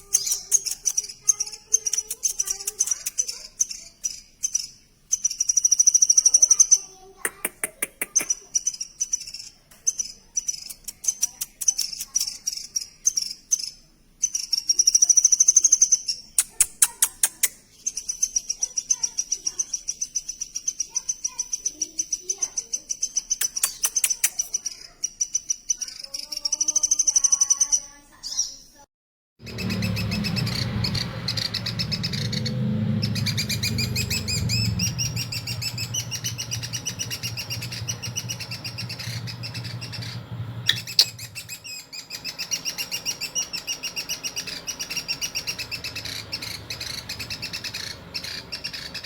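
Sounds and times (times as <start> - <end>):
sharp clicks: 0.0 - 1.2, 1.8 - 3.4, 7.3 - 8.4, 9.7 - 12.6, 16.4 - 17.6, 23.3 - 24.6, 34.1 - 49.0
nestlings begging chatter: 0.0 - 28.6, 29.4 - 49.0.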